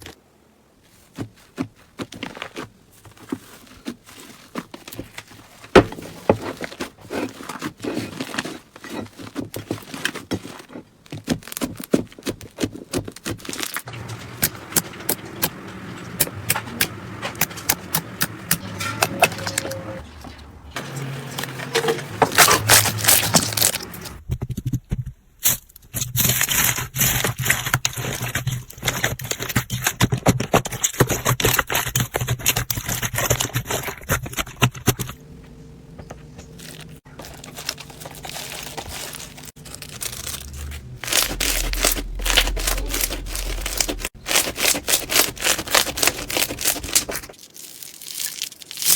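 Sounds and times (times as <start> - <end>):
slime crackling and popping: 37.3 - 48.9.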